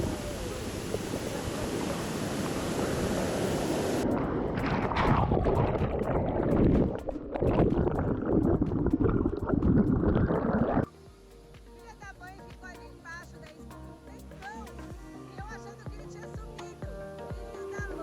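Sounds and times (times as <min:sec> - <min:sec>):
waterfall rushing into a pool: 0:00.0 - 0:10.9.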